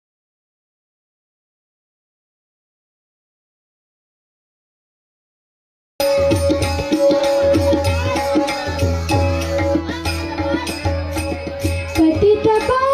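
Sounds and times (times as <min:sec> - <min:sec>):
tabla strokes: 0:06.0 - 0:12.9.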